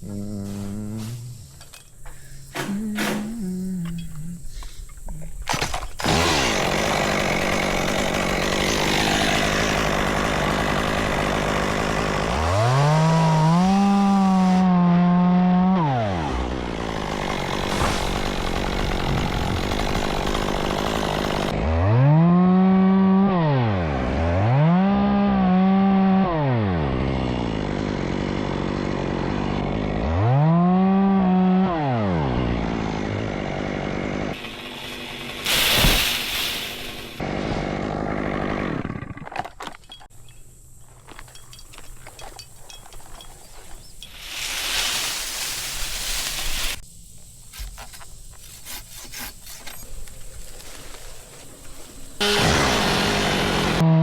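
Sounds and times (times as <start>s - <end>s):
chainsaw revving: 5.5s - 39.5s, 50.6s - 54.0s.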